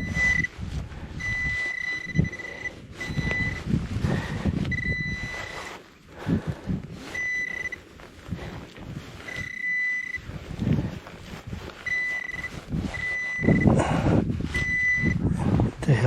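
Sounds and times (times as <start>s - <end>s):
high-pitched electronic beep: 0.0s - 0.5s, 1.2s - 3.6s, 9.3s - 10.2s
soil being dug: 0.0s - 15.6s.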